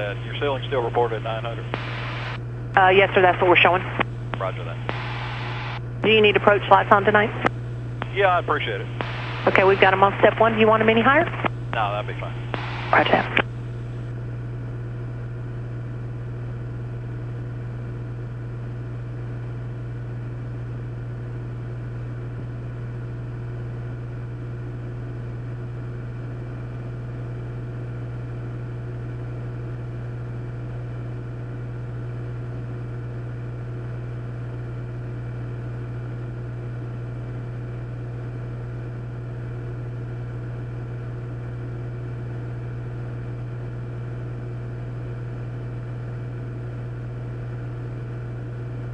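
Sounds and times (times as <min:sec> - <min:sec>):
aircraft engine and propeller drone: 0:00.0 - 0:01.7.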